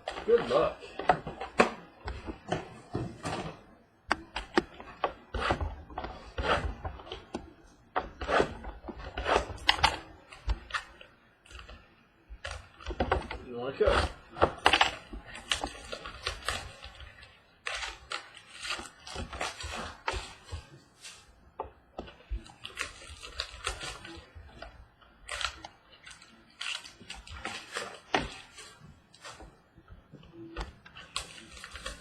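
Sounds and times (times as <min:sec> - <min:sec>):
packaging crinkling and clicking: 0:22.0 - 0:29.5, 0:30.4 - 0:32.0.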